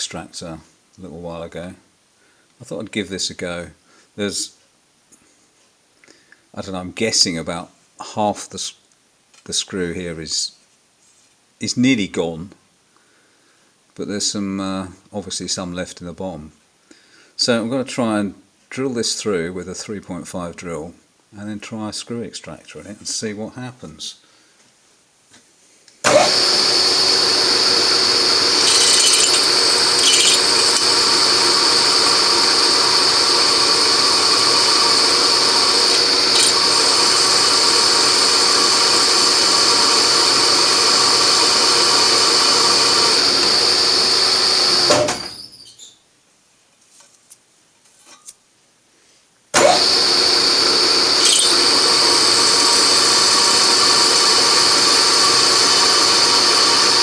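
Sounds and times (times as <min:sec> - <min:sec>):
milling machine drilling with whine: 0:26.1 - 0:45.4, 0:49.6 - 0:57.0.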